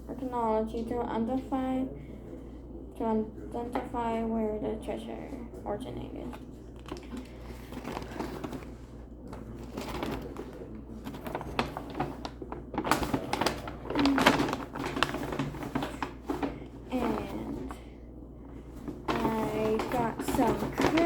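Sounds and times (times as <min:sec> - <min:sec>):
objects rustling and clicking: 0:06.3 - 0:17.9, 0:18.6 - 0:21.0.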